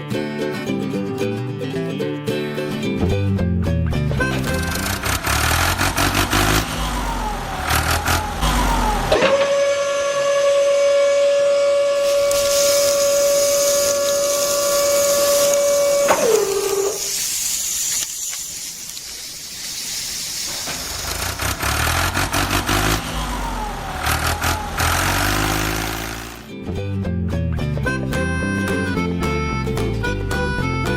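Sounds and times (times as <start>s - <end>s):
background music: 0.0s - 9.2s, 22.6s - 30.9s
whistle-like tone dropping in pitch: 6.4s - 17.2s, 22.8s - 25.9s
hiss: 11.9s - 26.4s.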